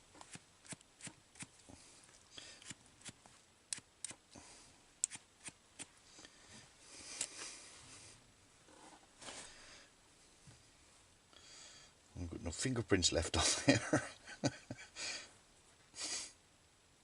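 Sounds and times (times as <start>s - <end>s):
soft rustling: 5.9s - 11.1s.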